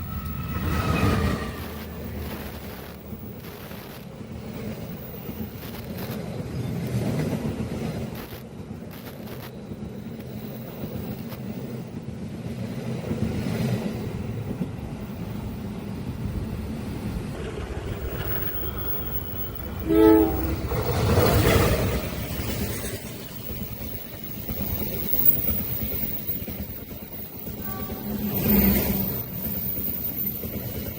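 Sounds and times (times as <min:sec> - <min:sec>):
rush of passing train: 0:00.0 - 0:30.9
train rumbling on track: 0:00.0 - 0:30.9
locomotive horn blast: 0:19.8 - 0:21.1, 0:27.6 - 0:29.0.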